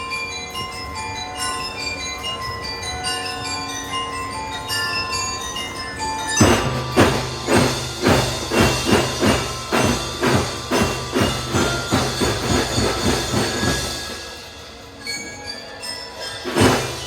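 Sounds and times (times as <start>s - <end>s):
held melody notes: 0.0s - 17.0s
drums marching beat: 6.4s - 14.6s, 16.4s - 17.0s.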